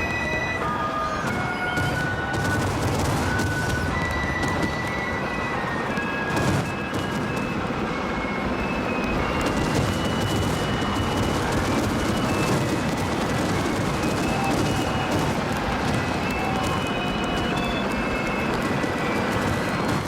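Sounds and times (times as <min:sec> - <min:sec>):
fireworks banging and crackling: 0:00.0 - 0:20.0.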